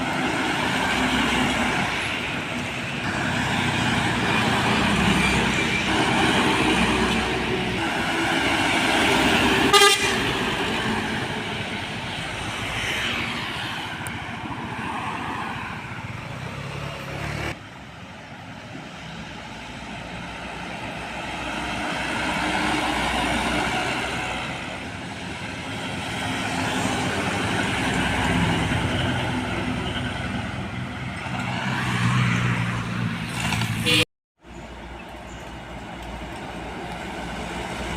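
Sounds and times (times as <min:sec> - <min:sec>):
heavy trucks driving past: 0:00.0 - 0:37.9
truck horns: 0:04.2 - 0:11.4, 0:33.6 - 0:34.0.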